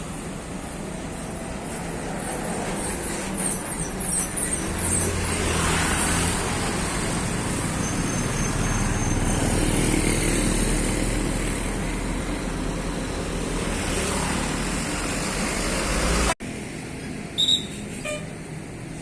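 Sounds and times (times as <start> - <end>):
bus engine humming: 0.0 - 19.0
road and traffic noise: 0.0 - 19.0
faint high whistle: 17.4 - 18.2.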